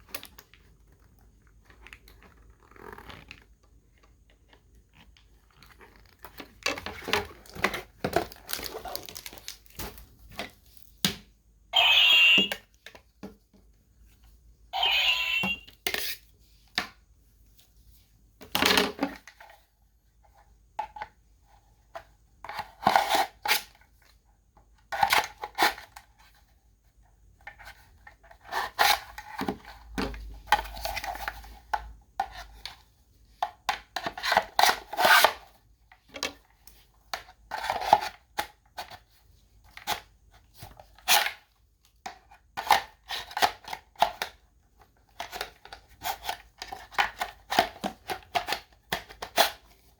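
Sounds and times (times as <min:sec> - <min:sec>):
plastic rustling: 0:05.3 - 0:10.9.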